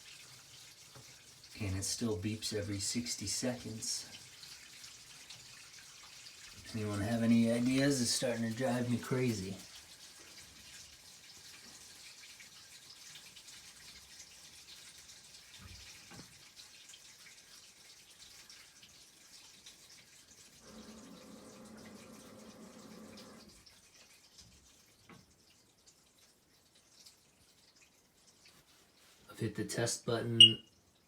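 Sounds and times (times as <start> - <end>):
faint steady hiss: 0.9 - 4.4, 6.5 - 10.6, 27.4 - 31.0.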